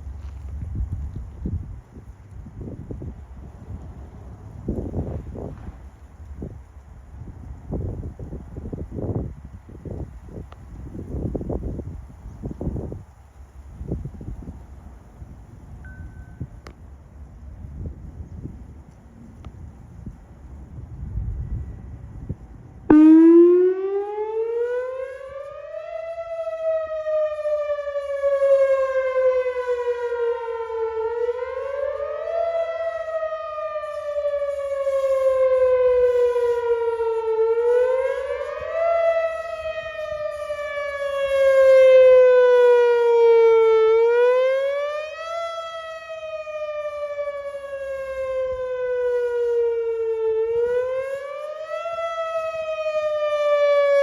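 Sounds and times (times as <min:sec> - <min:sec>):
electronic warning siren rising and falling: 0:22.9 - 0:54.0.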